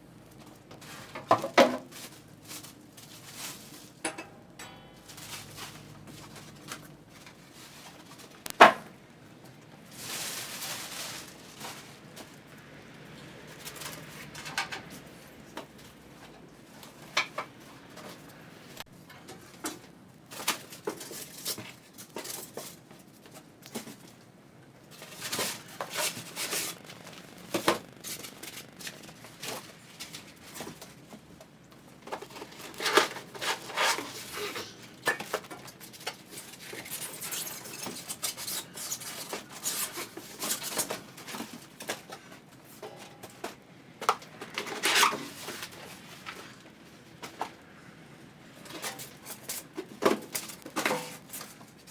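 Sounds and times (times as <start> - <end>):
metal parts scraping and knocking: 3.8 - 7.0
packaging rustling: 24.9 - 42.1.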